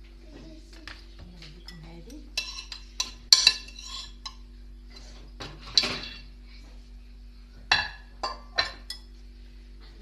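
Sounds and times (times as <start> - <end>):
utensils clinking against bowl: 1.4 - 6.3, 7.7 - 9.2.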